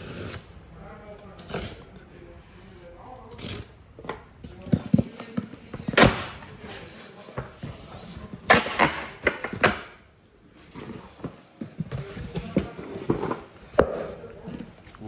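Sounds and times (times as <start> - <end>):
knife cutting cardboard box: 0.0 - 0.5, 4.7 - 9.9.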